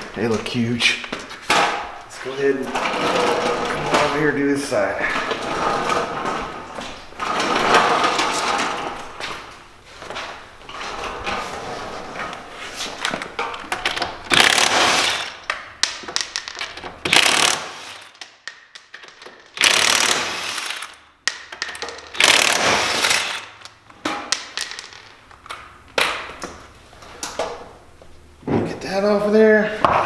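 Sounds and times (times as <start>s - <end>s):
impact wrench bursts: 14.3s - 15.4s, 17.0s - 18.2s, 19.6s - 21.0s, 22.1s - 23.6s
clanks of nuts and tools: 15.2s - 24.8s.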